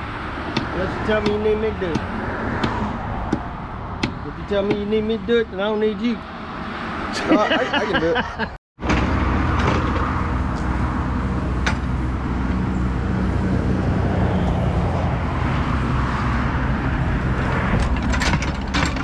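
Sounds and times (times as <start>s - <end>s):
engine running steadily: 8.8s - 19.0s.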